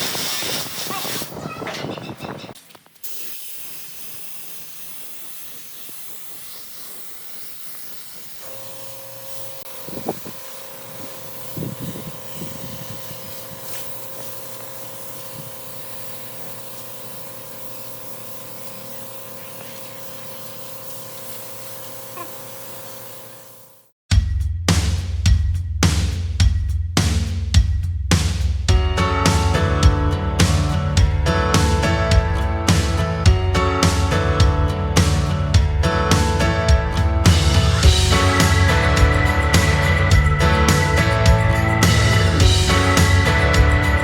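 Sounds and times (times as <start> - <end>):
steady hissing: 0.0 - 1.4, 3.0 - 23.5, 37.8 - 44.0
machine hum: 37.5 - 44.0.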